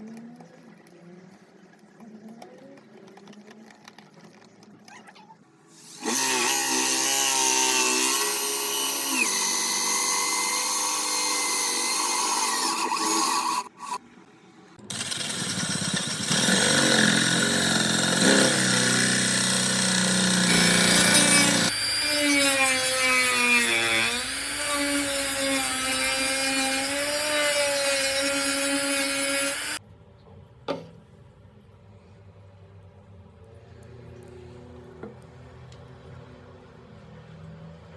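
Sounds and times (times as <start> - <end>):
power tool motor running: 14.9 - 29.8.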